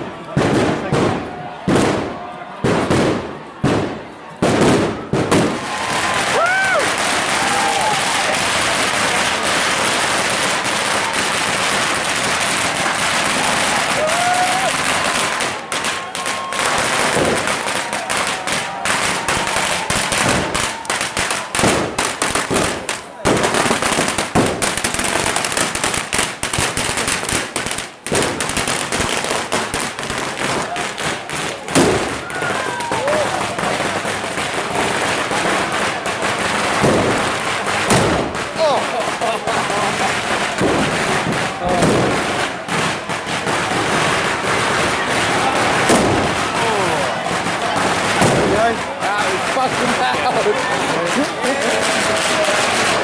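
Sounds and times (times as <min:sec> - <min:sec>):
crowd shouting: 0:00.0 - 0:53.0
firecrackers crackling: 0:00.0 - 0:53.0.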